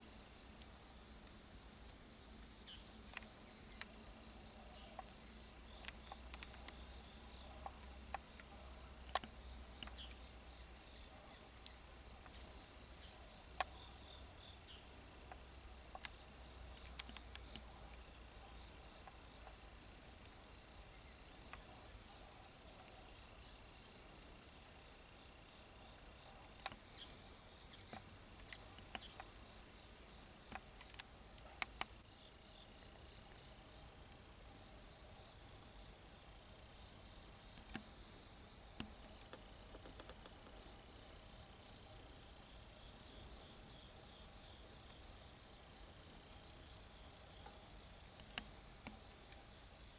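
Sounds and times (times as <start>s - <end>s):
crickets trilling: 0.0s - 49.9s
small sharp clicks: 1.9s - 4.0s, 5.7s - 10.2s, 15.2s - 18.1s, 27.8s - 29.4s, 30.4s - 32.0s, 37.5s - 37.9s, 38.7s - 40.6s, 47.4s - 49.5s.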